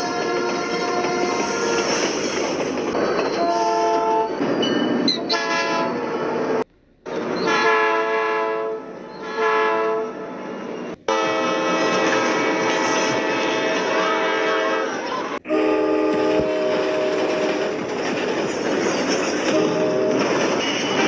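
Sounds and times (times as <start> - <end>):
train rumble: 0.0 - 21.0
locomotive horn blasts: 3.4 - 4.4, 5.3 - 6.0, 7.4 - 10.4, 11.0 - 17.8, 19.5 - 20.3.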